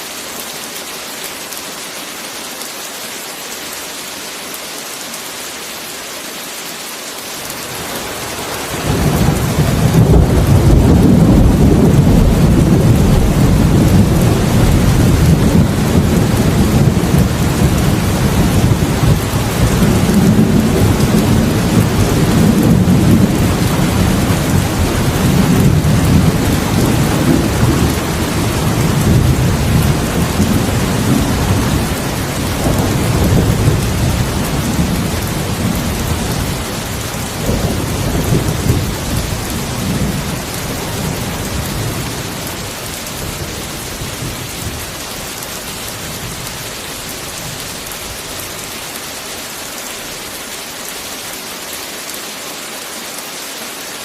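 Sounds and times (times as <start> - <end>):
heavy rain: 0.0 - 54.0
thunder rumbling: 8.4 - 45.0.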